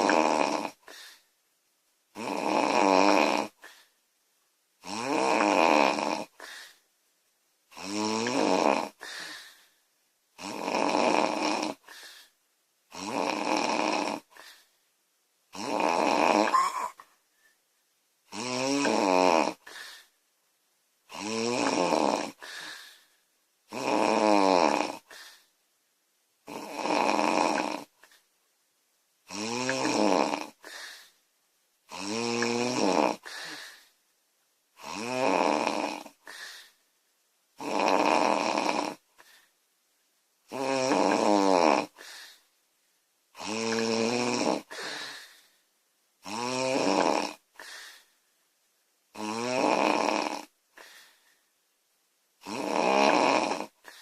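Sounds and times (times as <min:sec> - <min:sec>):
girl snoring loudly: 0:00.0 - 0:01.0, 0:02.1 - 0:03.7, 0:04.8 - 0:06.5, 0:07.7 - 0:09.3, 0:10.4 - 0:12.0, 0:12.9 - 0:14.4, 0:15.5 - 0:17.0, 0:18.3 - 0:19.8, 0:21.1 - 0:22.8, 0:23.7 - 0:25.2, 0:26.4 - 0:27.9, 0:29.3 - 0:30.9, 0:31.9 - 0:33.6, 0:34.8 - 0:36.4, 0:37.6 - 0:39.0, 0:40.5 - 0:42.1, 0:43.4 - 0:45.3, 0:46.2 - 0:47.8, 0:49.1 - 0:50.5, 0:52.4 - 0:54.0.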